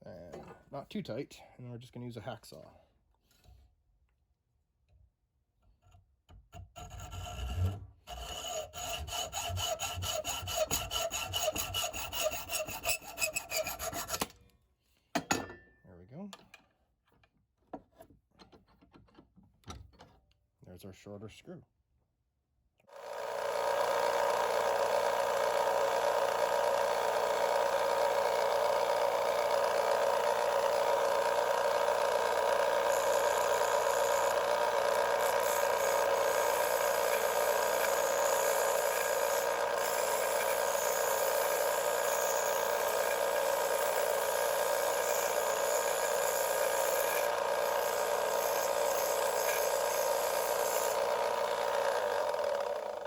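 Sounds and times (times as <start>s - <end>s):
small power tool grinding metal: 6.6s - 14.4s, 22.9s - 53.0s.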